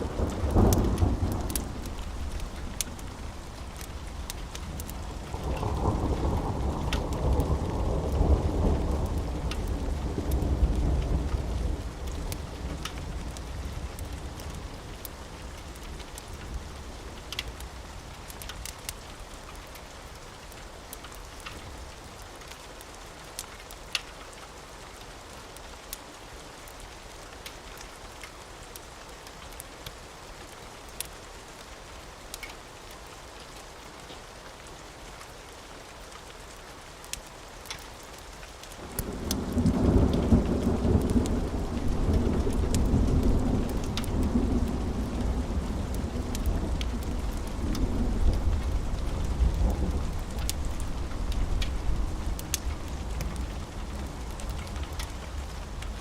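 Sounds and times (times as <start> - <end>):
thunder rumbling: 0.0 - 14.5, 38.8 - 56.0
steady rain: 0.0 - 56.0
fireplace crackling: 1.5 - 5.3.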